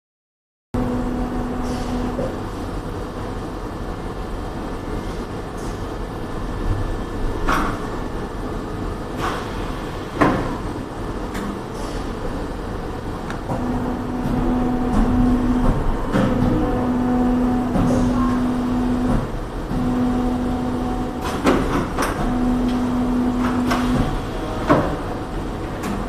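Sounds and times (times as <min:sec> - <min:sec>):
welding machine running hum: 0:00.8 - 0:03.8, 0:12.7 - 0:26.0.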